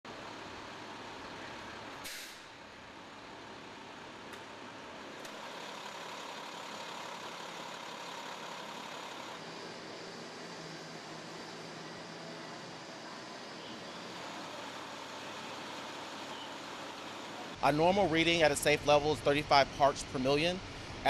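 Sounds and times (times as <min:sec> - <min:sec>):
large vehicle idling: 0:00.1 - 0:21.0
burst of air: 0:02.0 - 0:02.5.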